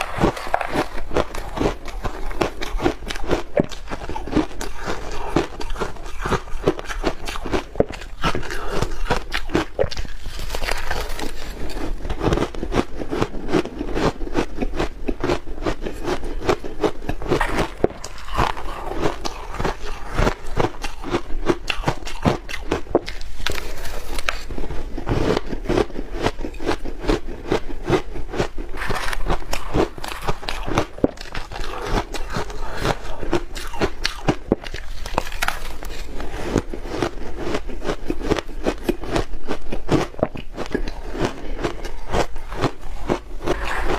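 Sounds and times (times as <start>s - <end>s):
ice crunching being chewed: 0.0s - 43.9s.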